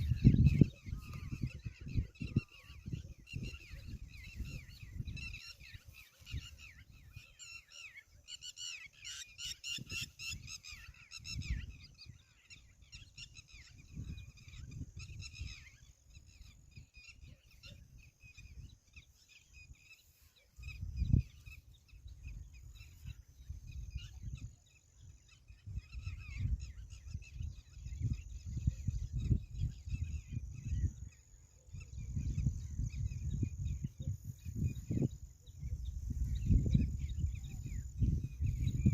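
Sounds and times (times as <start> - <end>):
microphone rumbles and bumps: 0.0 - 5.4, 31.9 - 38.9.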